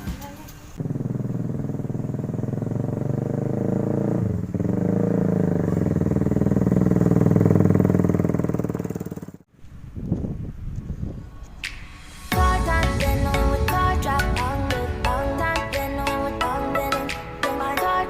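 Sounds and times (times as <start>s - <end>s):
vehicle engine running: 0.8s - 9.5s.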